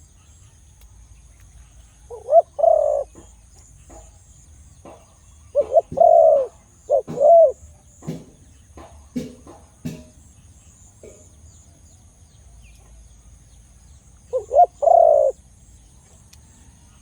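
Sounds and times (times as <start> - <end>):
dove cooing: 2.1 - 3.3, 5.5 - 8.3, 14.3 - 15.4.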